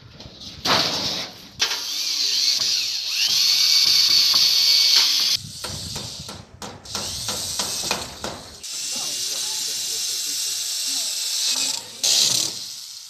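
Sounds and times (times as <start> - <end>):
power drill motor whine: 1.8 - 5.6, 8.6 - 13.0
knocks and rustles: 3.9 - 8.6.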